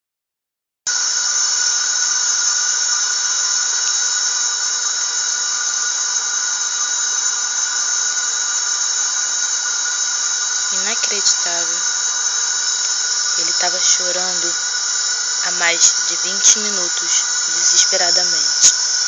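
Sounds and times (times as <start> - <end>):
faint steady tones: 1.0 - 19.0.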